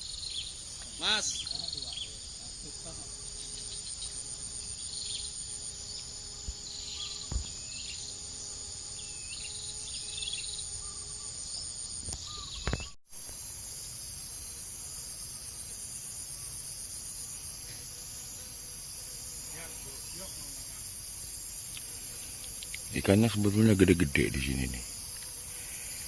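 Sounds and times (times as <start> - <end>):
insects chirping trill: 0.0 - 26.0
bird chirps: 6.7 - 8.2, 8.9 - 13.0
sharp knocks: 7.3 - 7.6.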